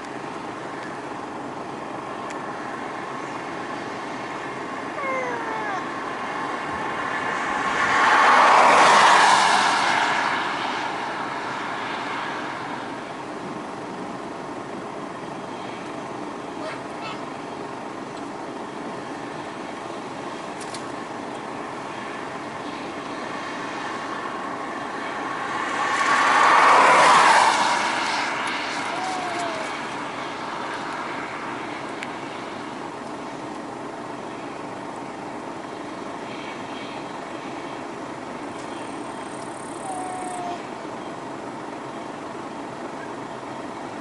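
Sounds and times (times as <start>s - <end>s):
combine harvester running: 0.0s - 8.5s, 12.3s - 26.4s, 28.1s - 44.0s.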